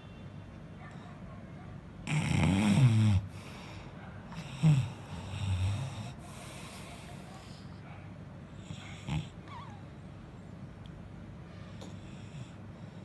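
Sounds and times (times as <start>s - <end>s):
man snoring: 2.1s - 3.4s, 4.4s - 6.2s.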